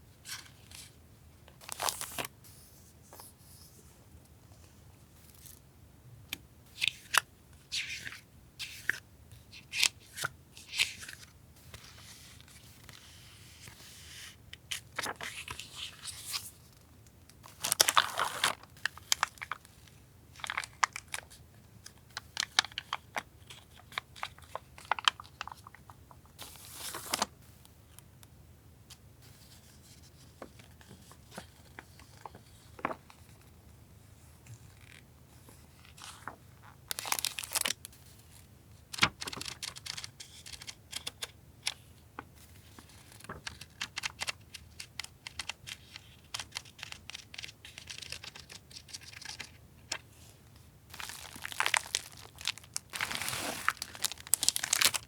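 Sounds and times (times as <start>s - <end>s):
packaging crinkling and tearing: 17.6s - 19.6s, 36.9s - 37.8s, 50.9s - 55.0s.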